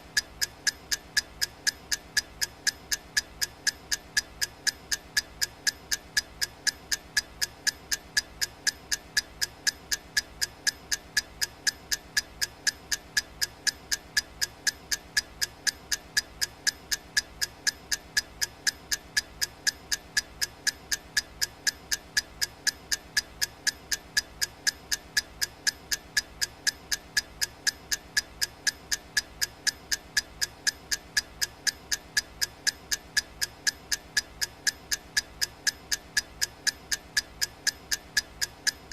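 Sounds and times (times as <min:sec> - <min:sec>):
clock ticking: 0:00.0 - 0:38.9.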